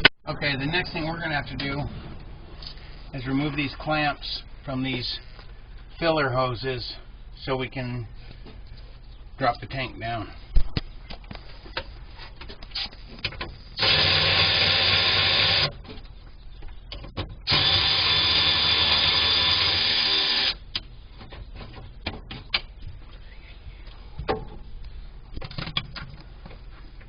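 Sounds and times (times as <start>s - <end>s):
power drill running: 13.8s - 15.7s, 17.5s - 20.6s.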